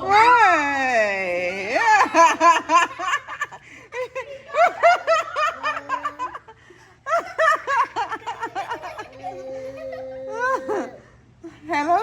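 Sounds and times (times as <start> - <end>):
children giggling: 2.0 - 11.2.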